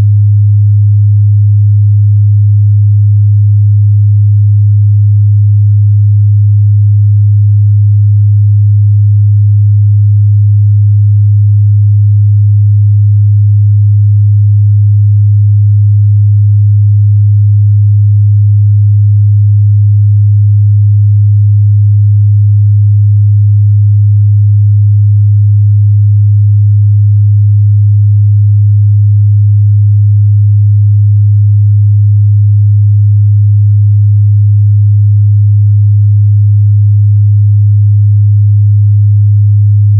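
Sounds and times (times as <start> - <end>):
low sine-wave test tone: 0.0 - 39.9.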